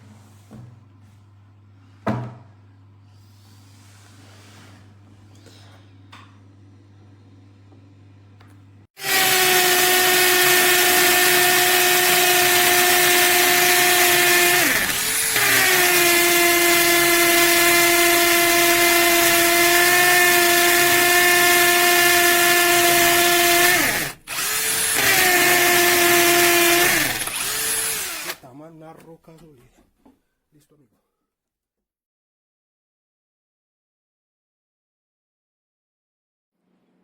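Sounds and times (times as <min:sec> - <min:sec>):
cordless drill whining: 0:09.0 - 0:28.4.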